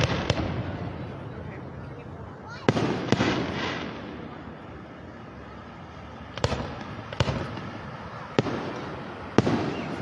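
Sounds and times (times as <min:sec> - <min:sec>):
fireworks bursting: 0:00.0 - 0:10.0
rumbling fireworks tail: 0:00.0 - 0:10.0.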